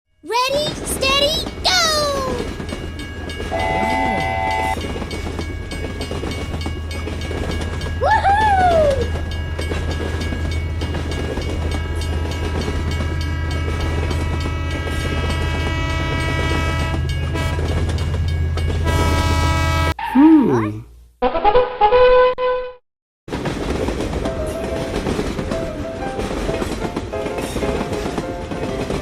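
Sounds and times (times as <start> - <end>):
train rumbling on rails: 0.1 - 20.0, 23.3 - 29.0
train horn: 3.5 - 4.8, 12.7 - 17.7, 18.8 - 20.0.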